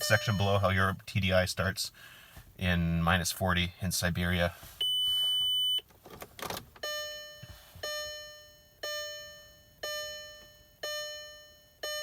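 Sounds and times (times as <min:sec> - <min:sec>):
dashboard warning chime: 0:00.0 - 0:01.4, 0:04.8 - 0:05.9, 0:06.8 - 0:12.0.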